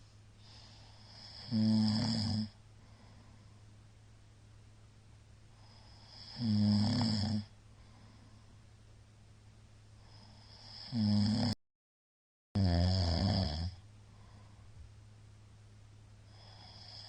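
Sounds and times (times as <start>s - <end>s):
man snoring loudly: 1.0s - 2.6s, 5.7s - 7.5s, 10.1s - 11.6s, 12.6s - 13.8s, 16.3s - 17.0s.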